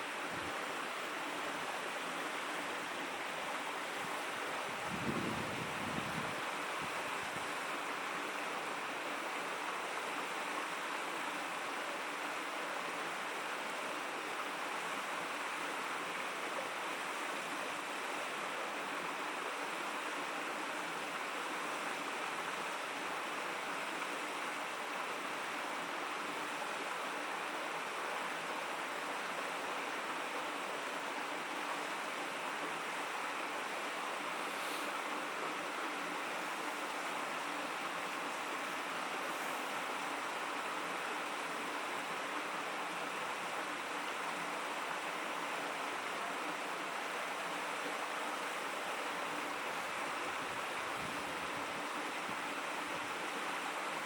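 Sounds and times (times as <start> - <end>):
river babbling: 0.0 - 54.0.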